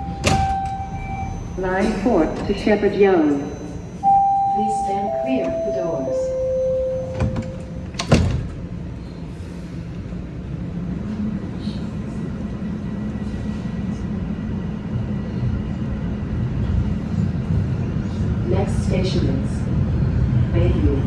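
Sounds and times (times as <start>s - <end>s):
train doors closing thud: 0.0s - 3.4s, 6.8s - 8.9s
train door chime: 0.0s - 8.6s
train motors and wheels rumbling: 0.0s - 21.0s.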